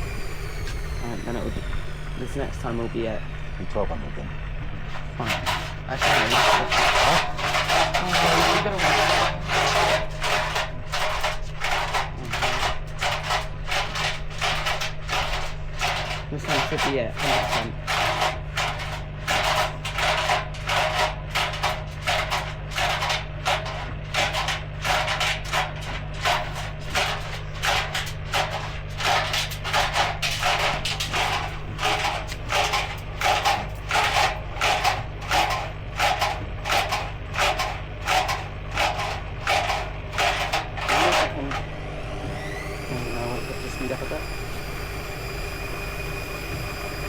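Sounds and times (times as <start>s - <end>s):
washing machine motor hum: 0.0s - 47.0s.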